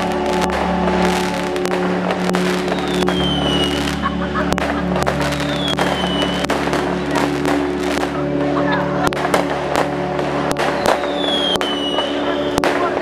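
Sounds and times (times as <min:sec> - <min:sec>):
droning background music: 0:00.0 - 0:13.0
fireworks bangs and crackles: 0:00.0 - 0:13.0
falling firework whistles: 0:02.7 - 0:03.9, 0:05.4 - 0:06.5, 0:10.7 - 0:12.6.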